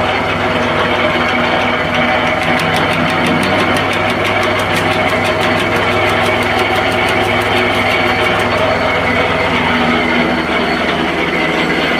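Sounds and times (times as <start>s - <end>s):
wood chipper engine running: 0.0s - 11.9s
rapid regular ticking: 1.2s - 9.8s.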